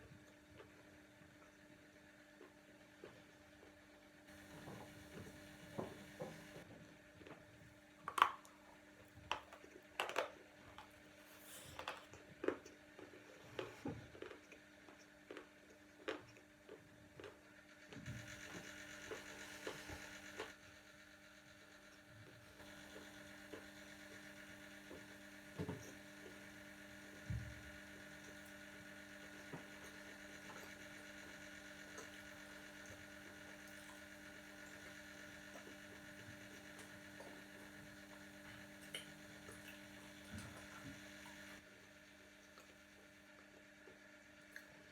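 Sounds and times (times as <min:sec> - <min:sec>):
electrical hum: 0:00.0 - 0:44.9
mineral lump crunched by chewing: 0:11.8 - 0:17.4.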